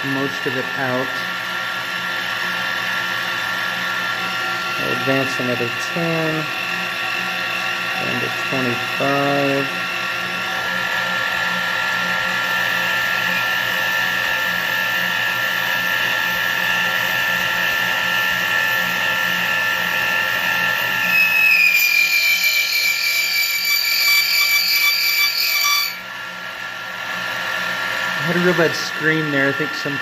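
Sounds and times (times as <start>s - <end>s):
lathe motor whine: 0.0s - 30.0s
cutting tool squealing: 20.4s - 26.0s.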